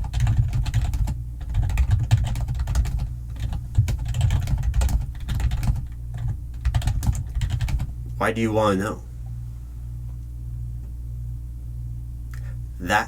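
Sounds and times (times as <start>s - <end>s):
fast typing on keyboard: 0.0s - 7.9s.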